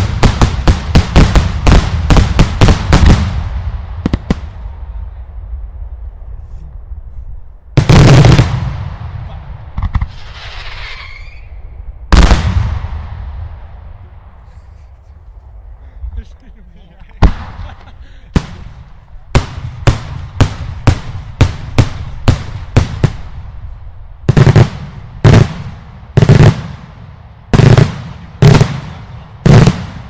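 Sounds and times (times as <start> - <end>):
fireworks bangs: 0.0 - 4.8, 7.8 - 14.4, 17.1 - 30.0
fireworks crackle: 9.8 - 11.6.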